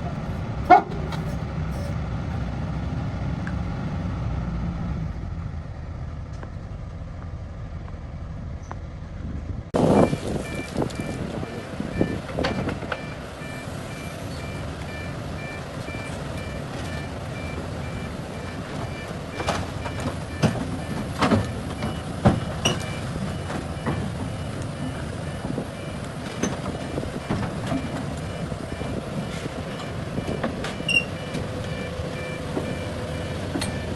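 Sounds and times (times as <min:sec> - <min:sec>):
heavy machine engine running: 0:00.0 - 0:33.9
reversing alarm beeps: 0:09.9 - 0:33.9.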